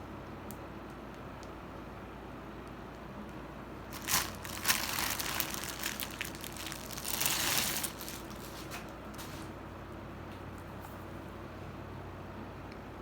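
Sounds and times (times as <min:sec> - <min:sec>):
packaging crinkling: 0:03.9 - 0:09.5.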